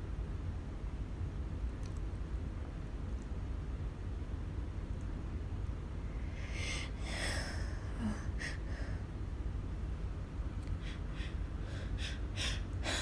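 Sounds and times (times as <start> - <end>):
low steady hum: 0.0 - 13.0
woman sniffling and breathing: 6.2 - 9.1, 10.7 - 13.0.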